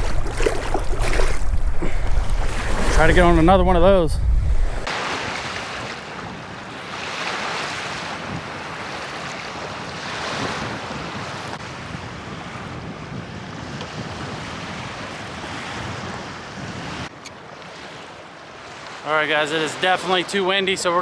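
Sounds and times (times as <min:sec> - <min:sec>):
wind buffeting microphone: 0:00.0 - 0:04.9, 0:10.3 - 0:17.2.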